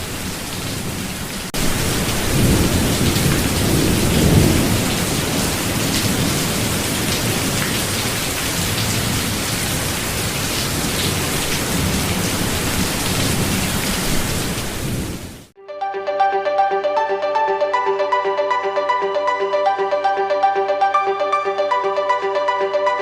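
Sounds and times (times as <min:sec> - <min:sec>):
heavy rain: 0:00.0 - 0:15.5
thunder rumbling: 0:00.8 - 0:15.5.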